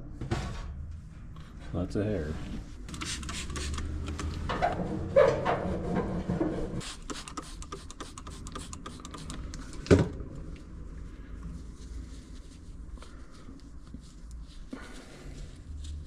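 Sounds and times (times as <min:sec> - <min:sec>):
dryer parts clicking and scraping: 0:02.9 - 0:09.9.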